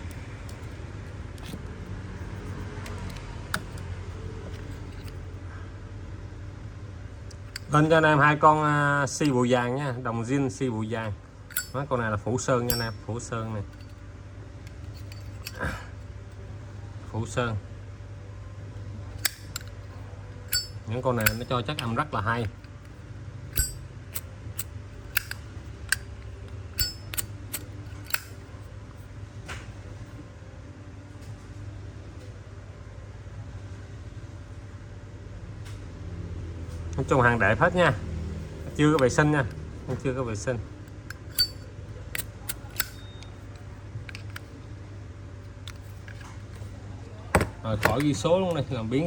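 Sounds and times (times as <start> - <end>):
steady low hum: 0.0 - 35.4, 36.4 - 49.0
lighter lids clicking open and shut: 7.3 - 7.7, 11.5 - 11.9, 12.7 - 13.0, 14.7 - 15.6, 19.2 - 19.8, 20.5 - 28.4, 40.9 - 43.3, 44.1 - 44.5, 45.6 - 46.3.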